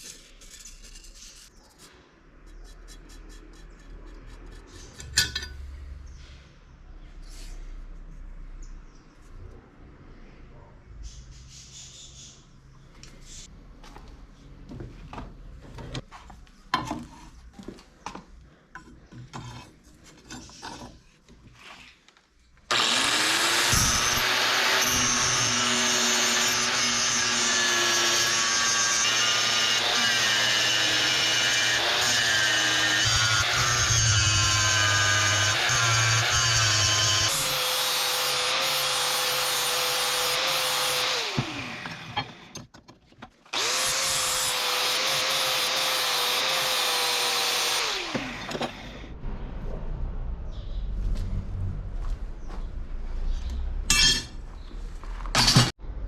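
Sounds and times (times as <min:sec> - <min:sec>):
handling clicks and scrapes: 0:15.8 - 0:22.6
electric power tool running: 0:22.7 - 0:42.6, 0:43.5 - 0:49.0.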